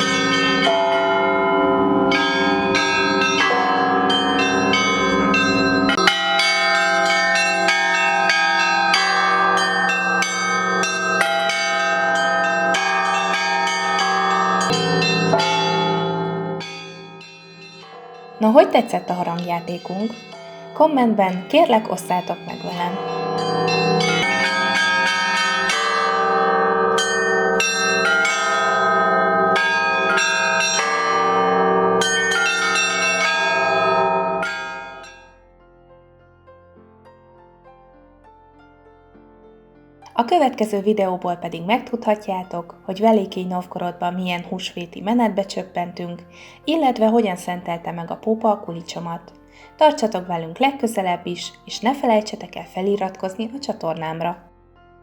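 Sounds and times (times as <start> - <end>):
deep bell humming: 0.0 - 35.1
high church bells ringing rapidly: 0.0 - 35.3.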